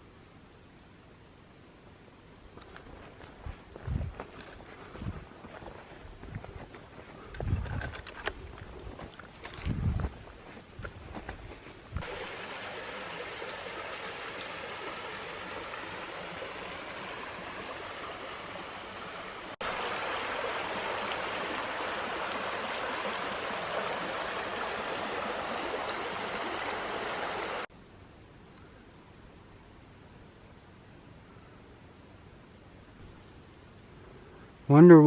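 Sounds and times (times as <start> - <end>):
creek flowing: 8.1 - 27.7.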